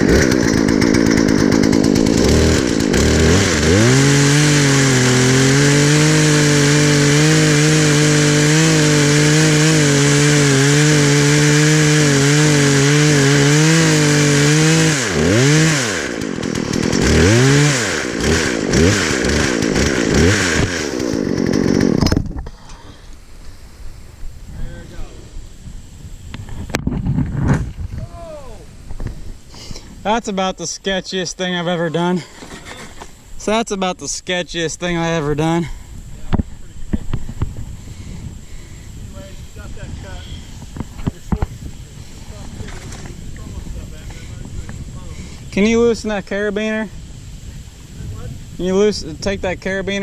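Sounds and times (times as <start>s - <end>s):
chainsaw revving: 0.0s - 22.6s.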